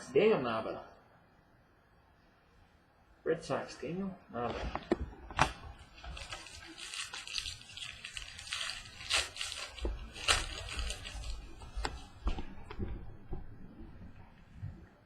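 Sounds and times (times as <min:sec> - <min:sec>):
cards and packaging rustling: 0:05.3 - 0:12.9.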